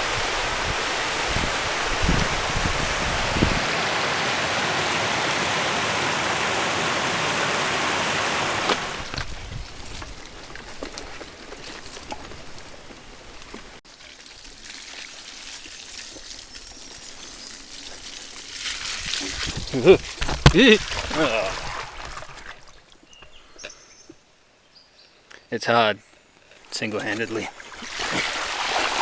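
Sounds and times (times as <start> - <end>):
heavy rain hissing: 0.0 - 9.1.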